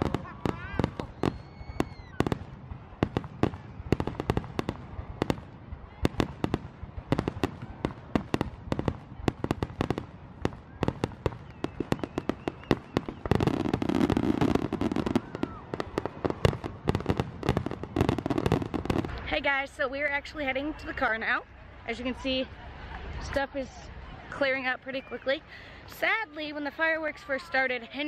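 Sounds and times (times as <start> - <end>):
fireworks bangs and crackles: 0.0 - 21.0.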